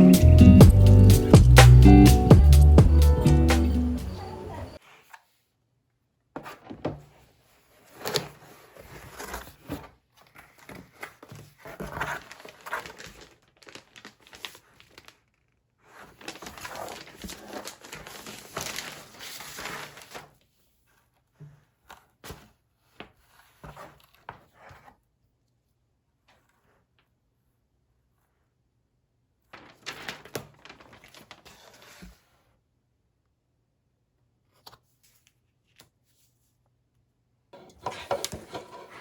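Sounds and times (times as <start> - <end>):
wrapping crinkling and rustling: 7.7 - 20.5, 29.5 - 32.4.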